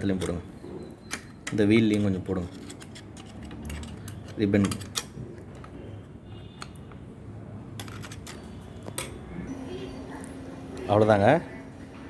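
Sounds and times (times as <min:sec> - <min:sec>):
typewriter mechanism clicking and rattling: 0:01.1 - 0:05.7, 0:07.8 - 0:08.5.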